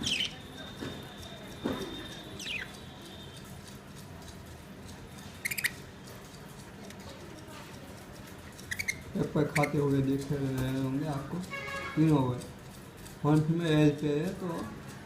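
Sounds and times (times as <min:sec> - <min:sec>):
budgerigars chirping: 0:00.0 - 0:00.5, 0:02.1 - 0:02.8, 0:05.4 - 0:05.8, 0:08.6 - 0:10.0.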